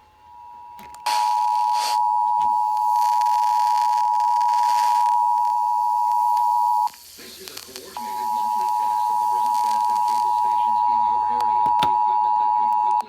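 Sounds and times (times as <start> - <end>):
hiss: 6.9 - 8.2.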